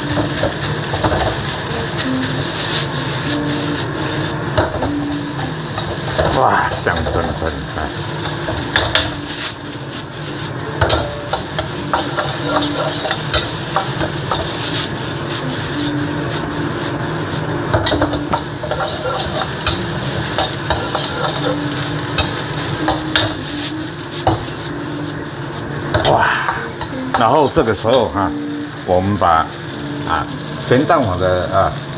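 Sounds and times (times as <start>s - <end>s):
fried rice sizzling in a pan: 0.0s - 31.9s
spatula clinking and scraping pan: 4.6s - 7.4s, 8.1s - 16.0s, 17.7s - 24.7s, 25.9s - 28.1s.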